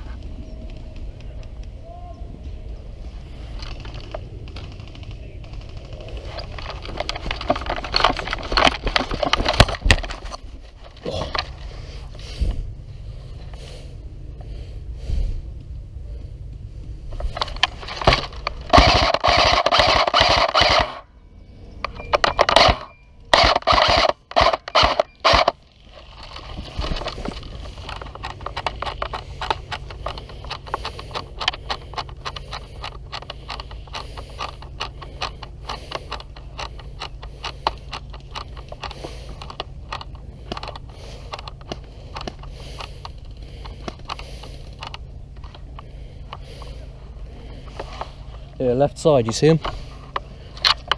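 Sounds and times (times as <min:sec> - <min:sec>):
clicking and scraping: 0:02.6 - 0:12.6, 0:15.6 - 0:21.0, 0:21.8 - 0:50.9
airsoft gunfire bursts: 0:18.1 - 0:21.0, 0:22.4 - 0:25.6.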